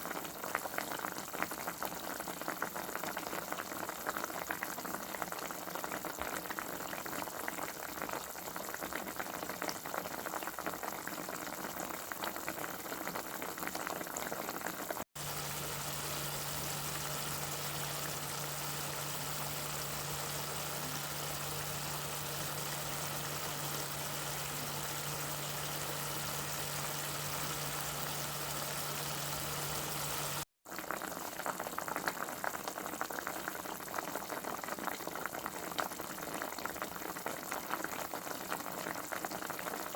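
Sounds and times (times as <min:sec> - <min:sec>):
food crackling on a stove: 0:00.1 - 0:38.0
low hum: 0:15.2 - 0:30.4.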